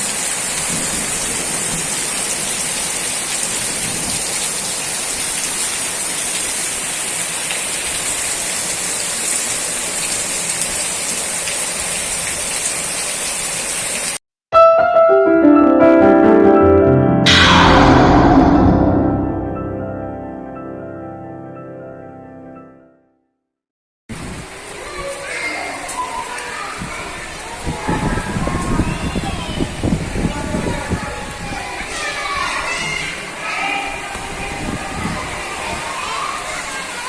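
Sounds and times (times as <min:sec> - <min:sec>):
heavy rain falling: 0:00.0 - 0:14.2
piano music: 0:14.5 - 0:23.1.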